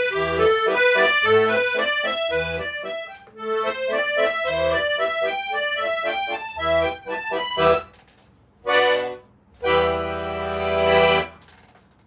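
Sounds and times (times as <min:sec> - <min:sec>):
solo accordion playing: 0:00.0 - 0:08.0, 0:08.6 - 0:11.4.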